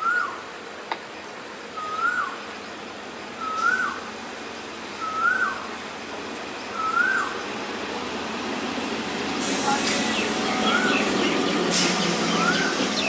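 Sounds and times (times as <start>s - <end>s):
bird whistling a single note: 3.4s - 3.9s.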